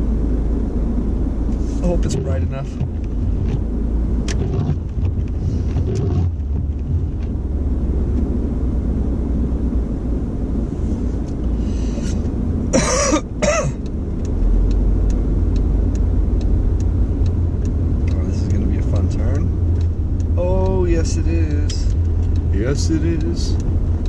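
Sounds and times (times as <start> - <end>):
car engine and tyre rumble: 0.0 - 24.0
person coughing: 12.7 - 13.8.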